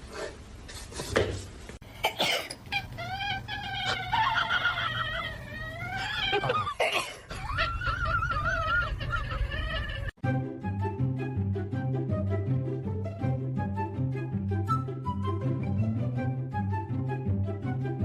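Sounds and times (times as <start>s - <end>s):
pet animal wavering cries: 2.6s - 6.8s.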